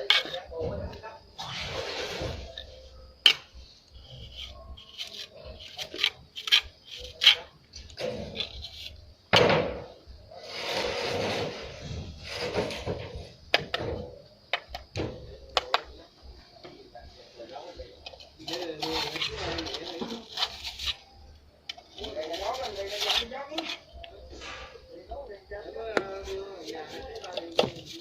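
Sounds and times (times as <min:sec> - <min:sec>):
trowel scraping on wall: 0:00.0 - 0:00.5, 0:01.4 - 0:09.0, 0:10.4 - 0:13.1, 0:18.1 - 0:21.0, 0:22.0 - 0:24.7.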